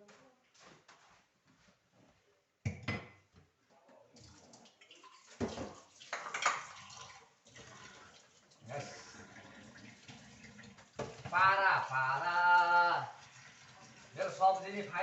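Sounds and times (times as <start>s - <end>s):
pots and utensils clattering: 5.0s - 8.0s.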